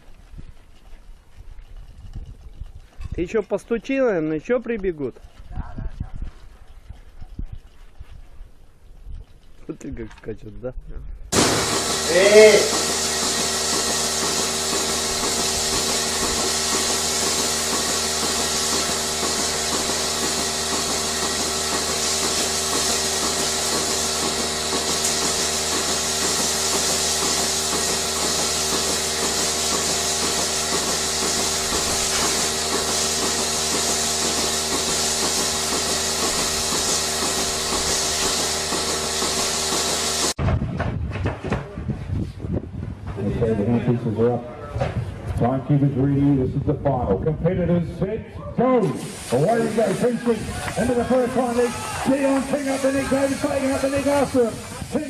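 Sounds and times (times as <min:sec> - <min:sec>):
strong hiss: 0:11.3 - 0:40.4, 0:48.8 - 0:55.0
machinery humming: 0:11.4 - 0:39.1.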